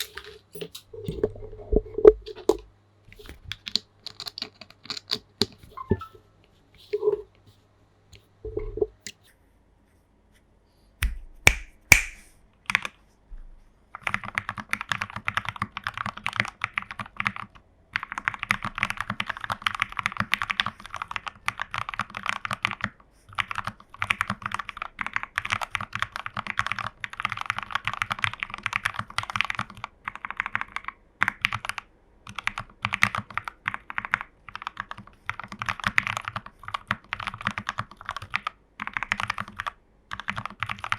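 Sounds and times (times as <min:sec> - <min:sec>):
mechanical keyboard typing: 0:03.2 - 0:06.1, 0:14.0 - 0:40.9.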